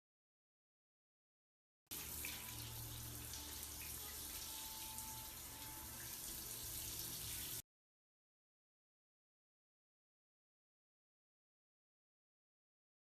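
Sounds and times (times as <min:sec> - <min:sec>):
water running: 0:01.9 - 0:07.6.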